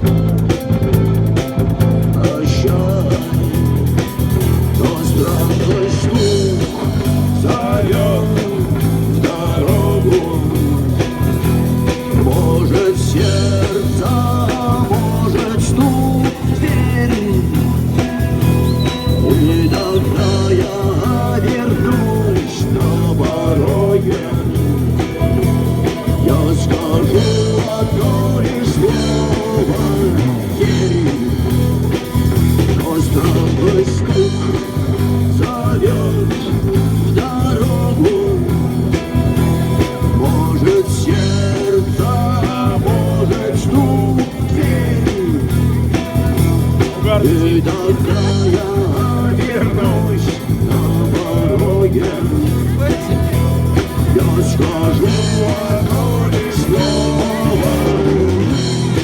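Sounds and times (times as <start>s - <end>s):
bass guitar: 0.0s - 59.0s
drum beat: 0.0s - 59.0s
electric guitar melody: 0.0s - 59.0s.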